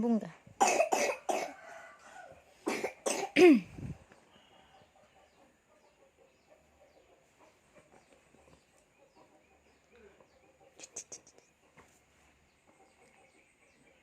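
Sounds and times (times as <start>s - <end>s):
child coughing: 0.6s - 1.6s, 2.6s - 3.7s.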